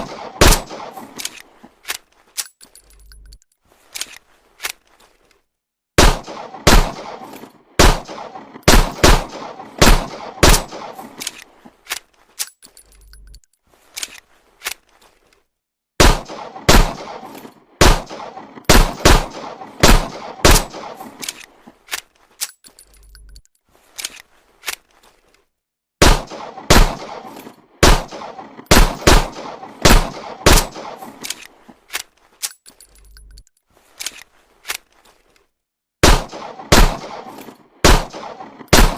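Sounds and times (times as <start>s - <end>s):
pistol shots: 0.0s - 1.3s, 6.0s - 11.3s, 16.0s - 21.2s, 26.0s - 31.3s, 36.0s - 38.9s.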